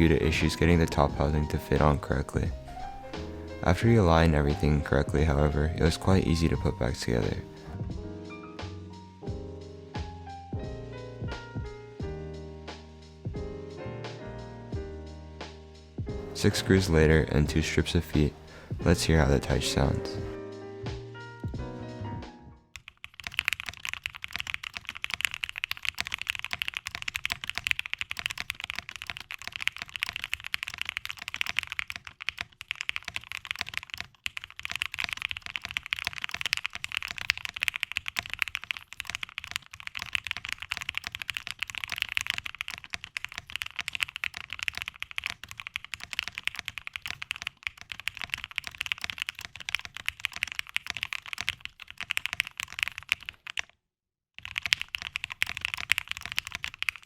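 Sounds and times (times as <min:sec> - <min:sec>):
mechanical keyboard typing: 0:22.8 - 0:53.8, 0:54.4 - 0:57.0.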